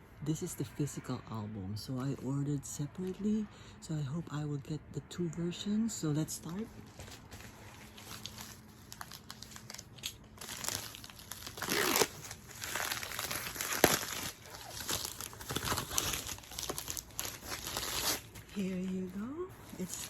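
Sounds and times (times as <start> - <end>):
packaging tearing and crinkling: 6.9 - 18.6.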